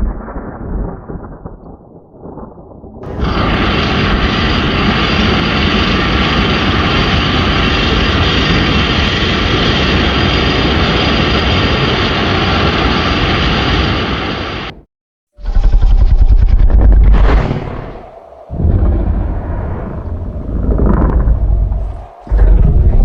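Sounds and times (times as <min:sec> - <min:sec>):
loud engine-like roar: 0:03.0 - 0:14.2, 0:15.4 - 0:23.0.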